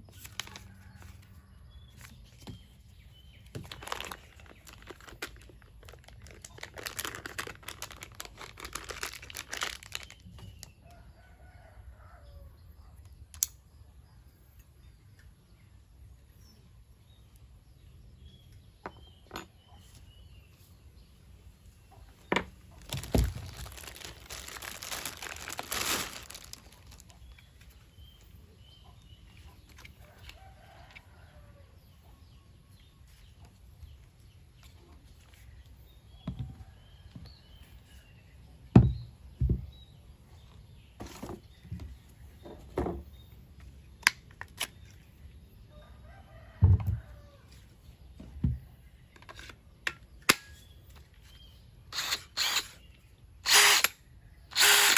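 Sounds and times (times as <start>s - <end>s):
packaging rustling: 3.5s - 10.7s, 22.8s - 27.8s.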